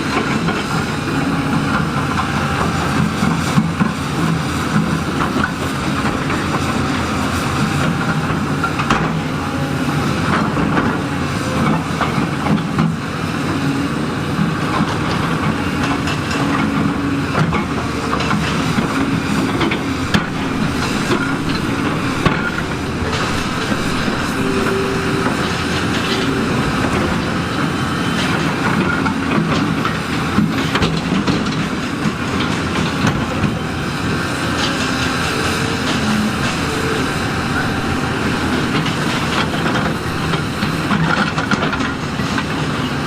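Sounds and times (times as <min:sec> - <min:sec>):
heavy machinery engine drone: 0:00.0 - 0:43.0
metal clanks and knocks: 0:17.4 - 0:27.5.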